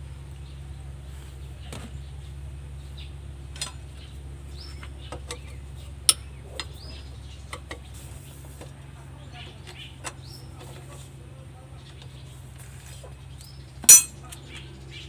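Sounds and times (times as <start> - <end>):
birds chirping: 0.0 - 15.0
low steady hum: 0.0 - 15.0
metal tools clicking and clinking: 13.9 - 14.2.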